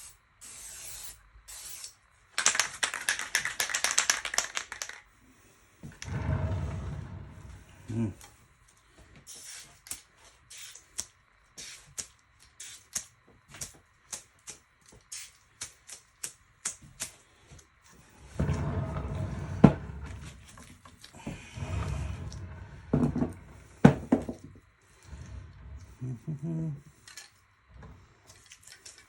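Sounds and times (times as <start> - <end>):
spray paint can hissing: 0.4 - 5.0, 12.6 - 13.0.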